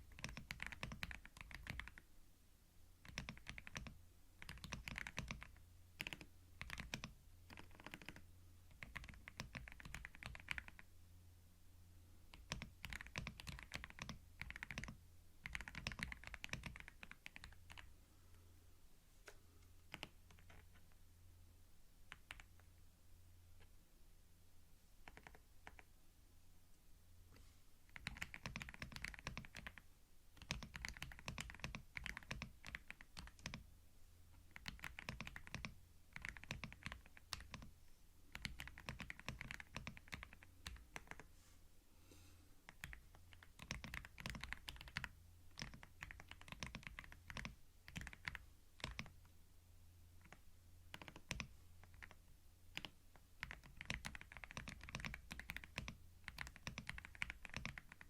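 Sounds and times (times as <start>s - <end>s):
faint low hum: 0.0s - 58.0s
computer keyboard typing: 0.1s - 2.0s, 3.0s - 10.9s, 12.3s - 17.9s, 19.8s - 21.0s, 22.1s - 22.7s, 25.0s - 25.9s, 27.9s - 29.8s, 30.4s - 33.6s, 34.4s - 37.7s, 38.3s - 41.3s, 42.7s - 49.2s, 50.2s - 58.0s.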